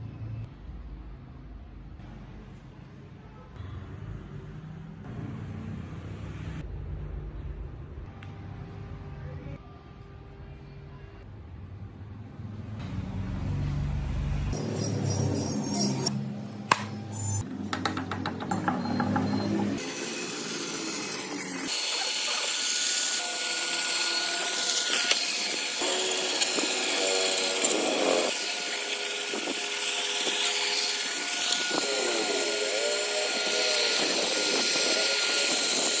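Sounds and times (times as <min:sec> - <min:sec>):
power tool whining: 0:15.4 - 0:36.0.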